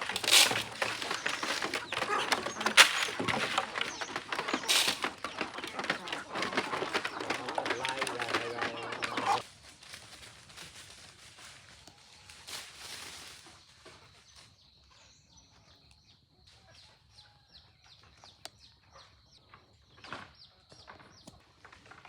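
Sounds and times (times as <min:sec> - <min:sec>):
chickens clucking and peeping: 0:00.0 - 0:09.4
rustling: 0:00.0 - 0:11.8.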